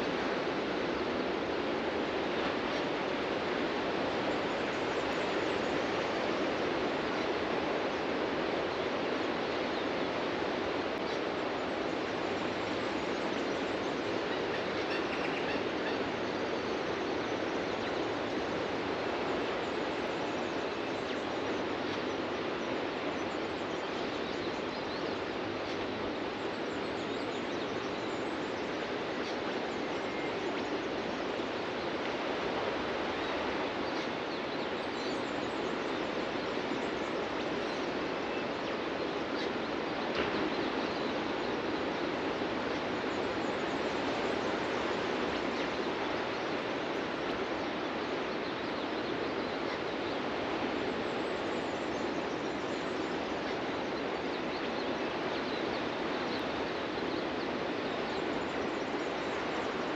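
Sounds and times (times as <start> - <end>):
faint bird calls: 10.9 - 18.3.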